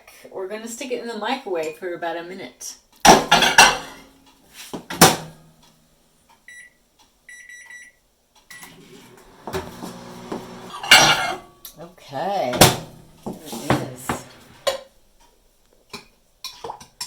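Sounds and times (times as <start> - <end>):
microwave beeps: 6.5 - 11.4
microwave humming: 8.5 - 11.6, 12.6 - 14.7.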